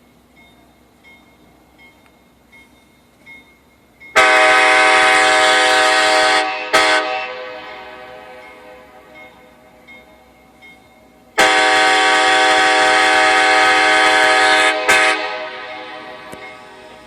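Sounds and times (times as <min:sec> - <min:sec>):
locomotive air horn blasts: 0:04.2 - 0:09.2, 0:11.4 - 0:16.4.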